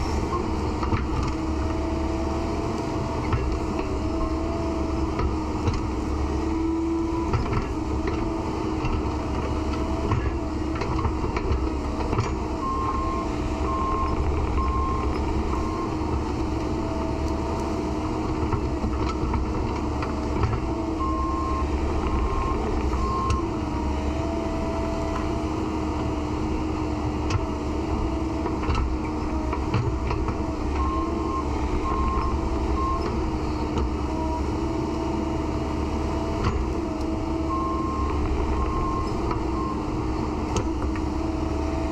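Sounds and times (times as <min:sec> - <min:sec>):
excavator diesel engine whining: 0:00.0 - 0:41.9
back-up alarm beeps: 0:12.5 - 0:16.0, 0:20.9 - 0:23.5, 0:30.7 - 0:33.2, 0:37.4 - 0:39.9.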